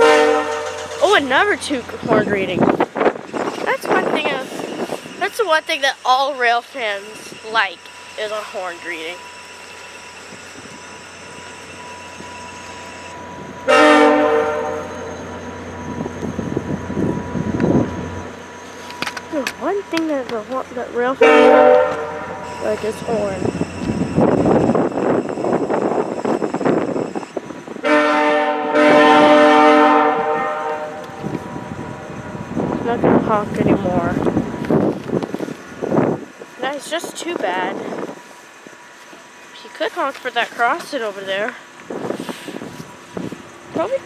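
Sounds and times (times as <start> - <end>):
locomotive air horn: 0.0 - 1.6, 13.7 - 15.1, 21.2 - 23.1, 27.8 - 31.7
locomotive engine rumble: 0.0 - 44.0
moving train noise: 0.0 - 44.0.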